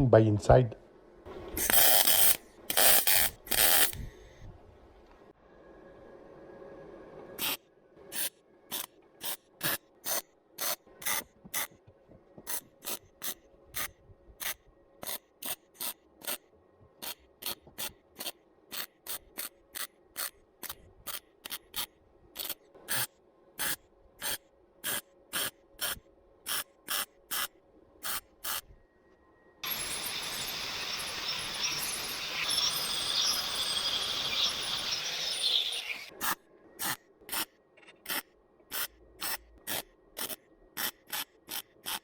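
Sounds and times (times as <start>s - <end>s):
electric welder crackling hiss: 1.5s - 4.2s, 17.0s - 28.6s, 29.6s - 37.4s, 38.1s - 42.0s.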